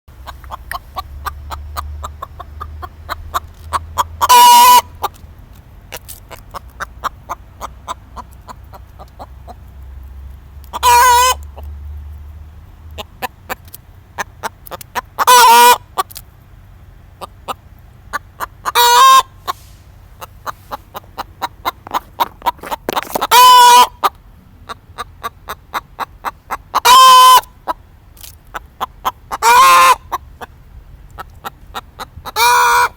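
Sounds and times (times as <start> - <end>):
chicken clucking softly: 0.2 - 5.2, 28.5 - 32.9
chicken hiccuping call: 4.0 - 4.9, 10.7 - 11.4, 15.2 - 15.8, 18.1 - 19.6, 20.2 - 24.1, 25.7 - 27.5, 29.0 - 30.1, 32.2 - 32.9.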